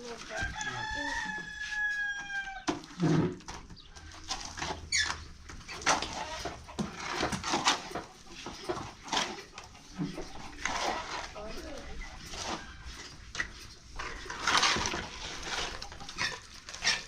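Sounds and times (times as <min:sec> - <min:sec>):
rooster crowing: 0:00.3 - 0:02.7
knocks and clatter: 0:02.7 - 0:11.3.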